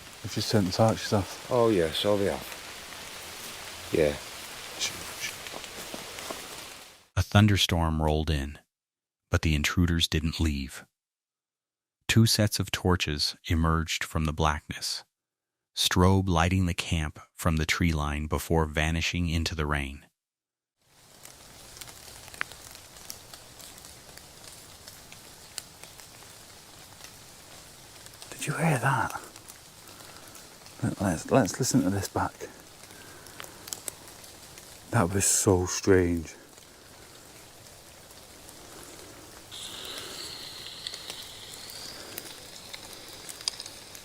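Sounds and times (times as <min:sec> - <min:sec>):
steady high hiss: 0:00.0 - 0:07.0, 0:26.8 - 0:44.0
raindrops ticking close by: 0:00.0 - 0:07.1, 0:20.9 - 0:44.0
steady rain: 0:00.0 - 0:07.1, 0:20.9 - 0:44.0
small drop ticks: 0:39.8 - 0:44.0.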